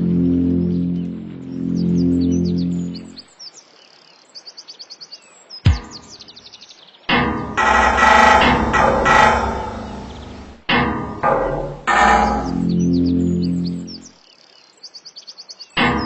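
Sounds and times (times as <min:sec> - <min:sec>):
birds chirping: 0:00.0 - 0:16.0
loud music: 0:05.7 - 0:05.9
loud thump: 0:05.7 - 0:06.0.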